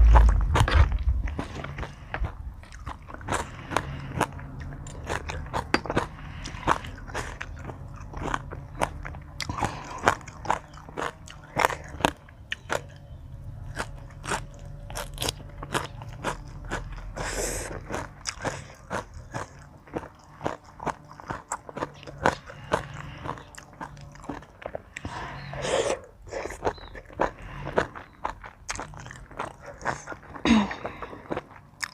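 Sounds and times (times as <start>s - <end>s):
close-miked crunchy eating: 0.0s - 31.9s.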